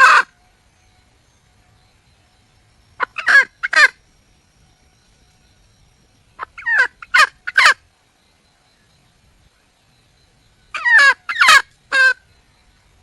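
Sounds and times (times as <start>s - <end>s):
hen calling in falling notes: 3.0s - 3.9s, 10.7s - 12.2s.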